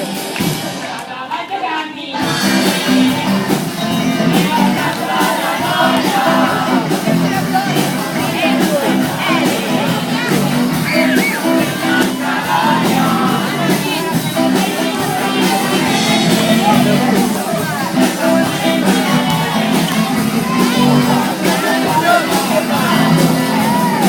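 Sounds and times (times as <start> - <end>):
voices: 1.0 - 24.0
loud music with steady beat: 2.1 - 24.0.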